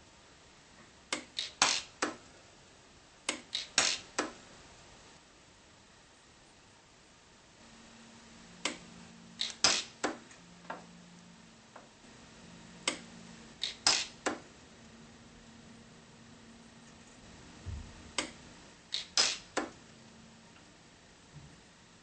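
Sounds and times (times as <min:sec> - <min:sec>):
welder snapping clicks: 0:01.1 - 0:02.2, 0:03.3 - 0:04.4, 0:08.6 - 0:08.8, 0:09.4 - 0:10.2, 0:12.8 - 0:14.4, 0:18.2 - 0:19.8
low machine hum: 0:04.4 - 0:09.6, 0:10.2 - 0:13.6, 0:14.4 - 0:18.9, 0:19.6 - 0:22.0.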